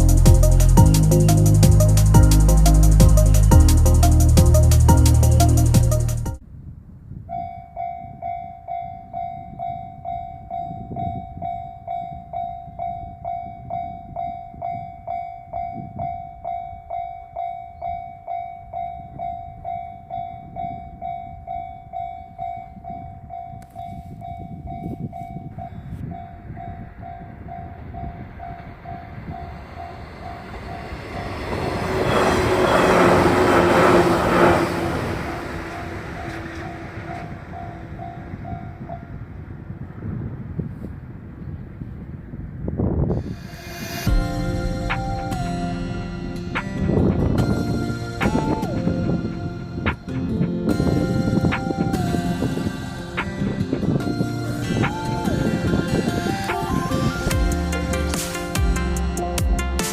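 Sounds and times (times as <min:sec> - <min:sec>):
train rumbling past: 0:00.0 - 0:06.4, 0:25.5 - 0:40.6, 0:42.9 - 0:59.8
level crossing alarm bell: 0:07.3 - 0:33.6.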